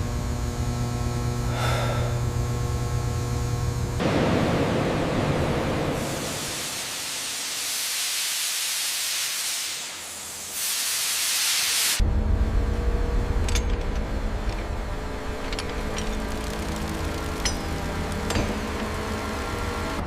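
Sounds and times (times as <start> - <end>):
low machine rumble: 0.0 - 6.4, 12.0 - 20.0
hiss of spray or gas: 6.0 - 12.0.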